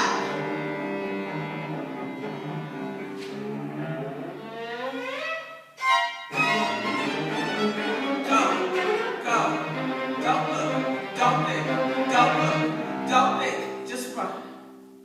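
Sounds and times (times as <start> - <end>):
cello: 0.0 - 14.7
violins: 0.0 - 14.7
viola: 0.0 - 15.0.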